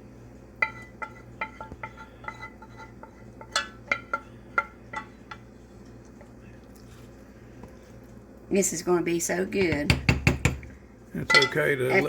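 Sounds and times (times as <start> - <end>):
spoon scraping a saucepan: 0.6 - 6.3.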